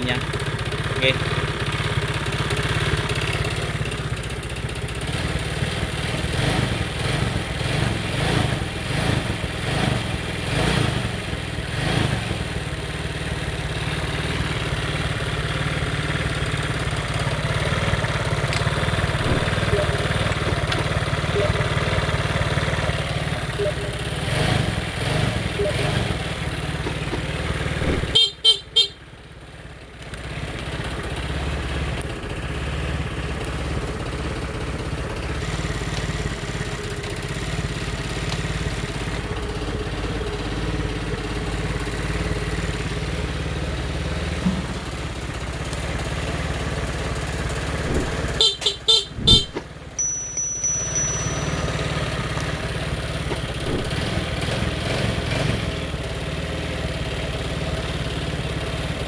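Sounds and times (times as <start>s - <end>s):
scooter engine idling: 0.0s - 59.0s
scooter horn short beeps: 19.0s - 24.4s, 27.8s - 29.0s, 47.9s - 52.8s.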